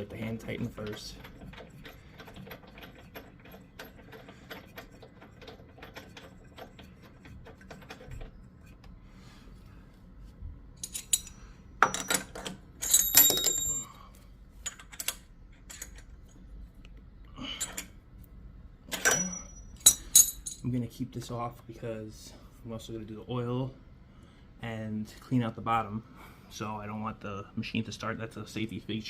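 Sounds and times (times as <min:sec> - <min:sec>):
metal clinks ringing: 0:10.8 - 0:13.9, 0:18.9 - 0:20.7.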